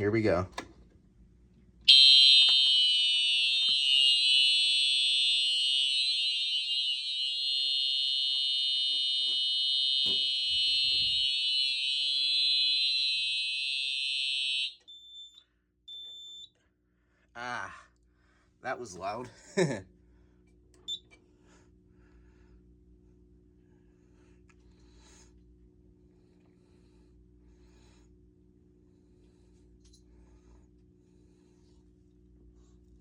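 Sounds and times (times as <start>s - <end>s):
fire alarm horn: 1.9s - 16.5s.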